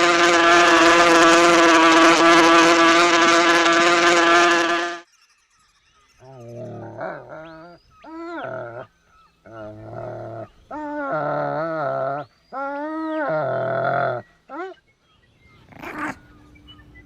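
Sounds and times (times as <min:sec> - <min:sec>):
dog growling: 0:06.3 - 0:08.9, 0:09.5 - 0:12.2, 0:13.0 - 0:14.2, 0:15.7 - 0:16.2.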